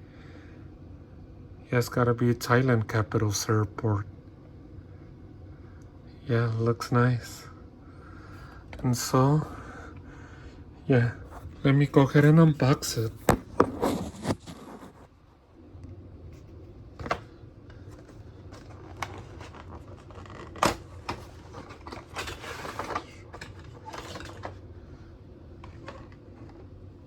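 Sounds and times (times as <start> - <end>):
low steady hum: 0.0 - 27.0
packaging rustling: 11.2 - 15.2, 16.5 - 24.6
clicks and knocks of packaging: 17.0 - 24.6.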